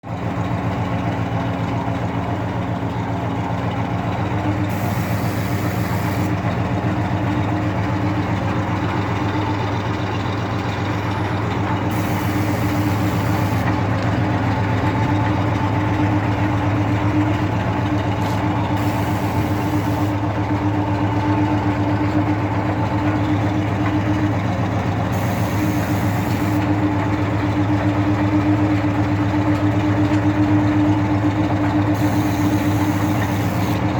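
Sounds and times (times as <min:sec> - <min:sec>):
drilling rig engine hum: 0:00.1 - 0:33.9
short bursts of hiss: 0:04.7 - 0:06.3, 0:11.9 - 0:13.7, 0:18.8 - 0:20.1.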